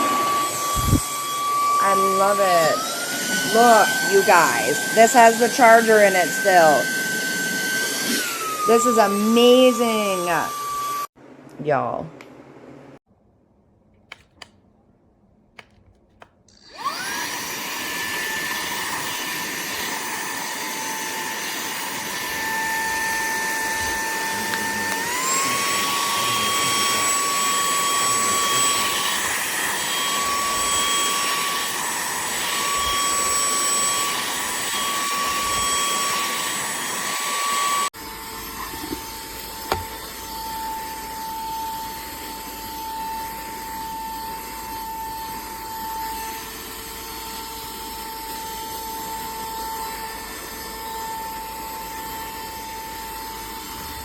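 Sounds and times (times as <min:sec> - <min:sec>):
handheld vacuum motor whining: 0:00.0 - 0:11.1, 0:15.6 - 0:54.0.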